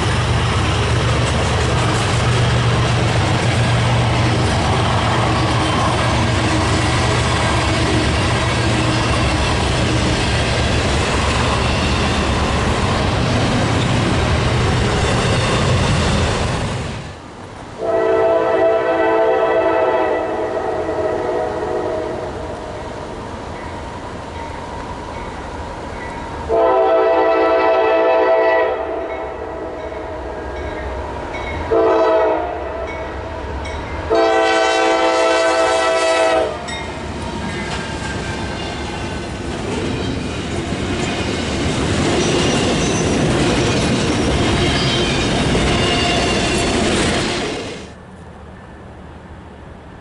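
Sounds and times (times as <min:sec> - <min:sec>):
passing train noise: 0:00.0 - 0:50.0
locomotive air horn blasts: 0:17.8 - 0:22.3, 0:26.5 - 0:29.2, 0:31.7 - 0:32.9, 0:34.1 - 0:36.7.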